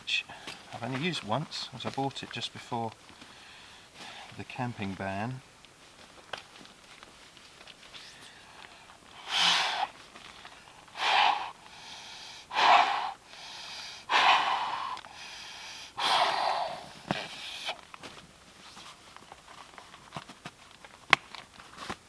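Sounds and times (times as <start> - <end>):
person blowing into pillow valve: 9.1 - 10.0, 10.9 - 17.8.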